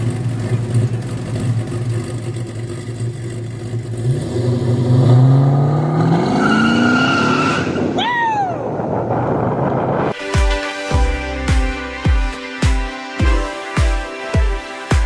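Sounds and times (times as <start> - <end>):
car engine accelerating: 0.0 - 8.0.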